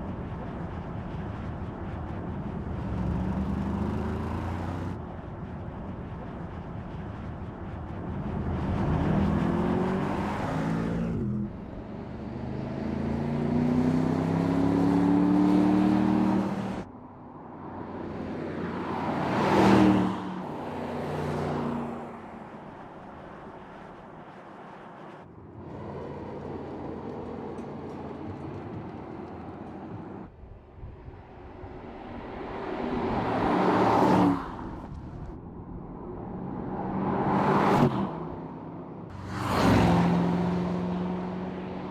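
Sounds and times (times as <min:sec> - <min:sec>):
car passing by: 0:17.5 - 0:30.3, 0:31.2 - 0:38.4, 0:39.0 - 0:41.9.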